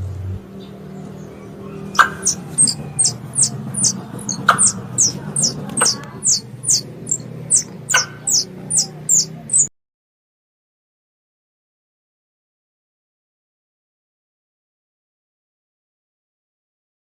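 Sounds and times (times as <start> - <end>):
low background hum: 0.0 - 9.7
squirrel calls high chirps: 1.4 - 9.7.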